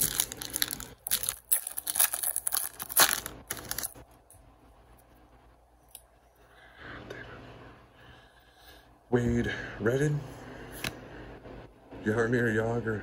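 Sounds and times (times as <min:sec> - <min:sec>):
wrapper tearing and crinkling: 0:00.0 - 0:04.0.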